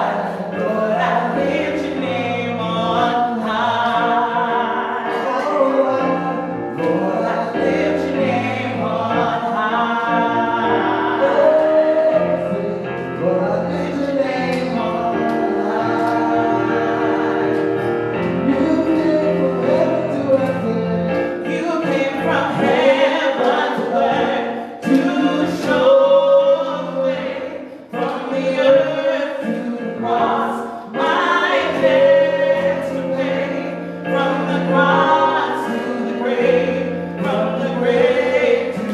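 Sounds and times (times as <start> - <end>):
gospel instrumental accompaniment: 0.0 - 38.9
man and woman singing: 0.0 - 38.9.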